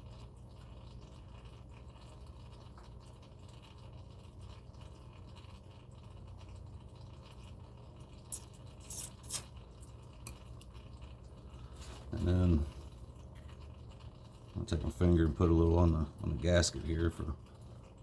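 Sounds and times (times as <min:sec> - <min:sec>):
faint scraping and handling: 0:11.6 - 0:12.9.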